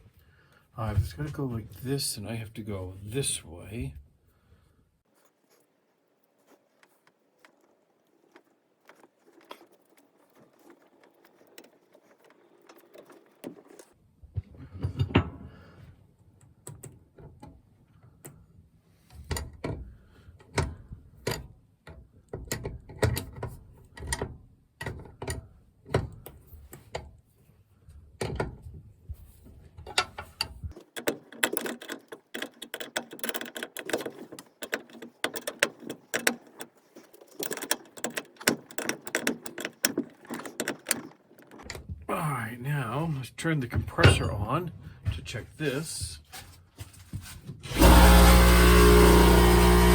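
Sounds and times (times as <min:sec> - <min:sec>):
metal fittings clicking and rattling: 0:06.5 - 0:14.0, 0:30.0 - 0:41.8.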